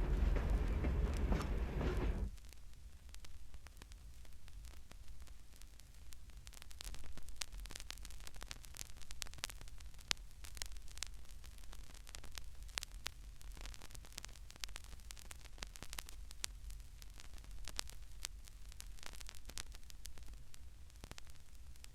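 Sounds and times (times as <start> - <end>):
low hum: 0.0 - 2.3
vinyl crackle and pops: 0.0 - 21.9.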